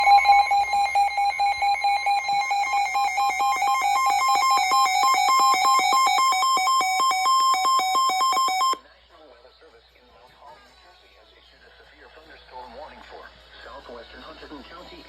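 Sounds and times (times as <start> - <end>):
electronic alarm beeps: 0.0 - 8.8.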